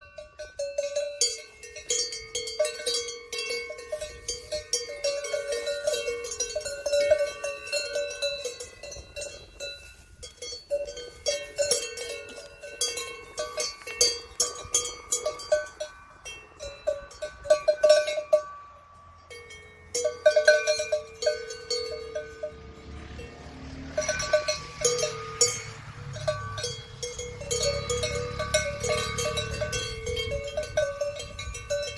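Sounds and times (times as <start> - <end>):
cowbells clanking: 0.0 - 31.9.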